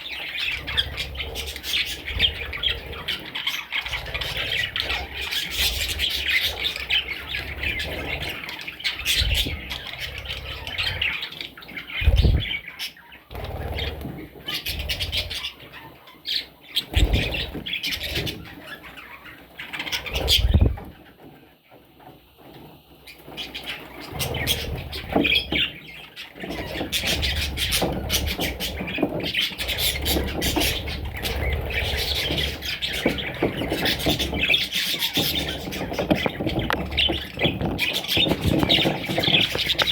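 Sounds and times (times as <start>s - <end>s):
parrots chirping and squawking: 0.0s - 21.3s, 23.0s - 39.9s.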